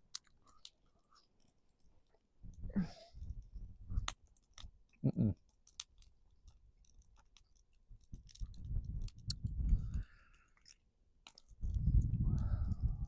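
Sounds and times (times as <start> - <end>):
person chewing: 0.0 - 2.2, 8.3 - 11.8.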